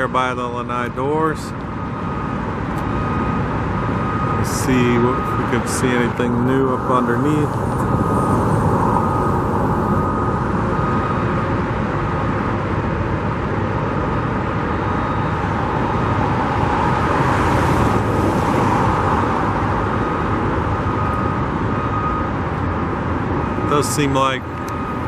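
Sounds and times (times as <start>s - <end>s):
road traffic noise: 0.0s - 25.0s.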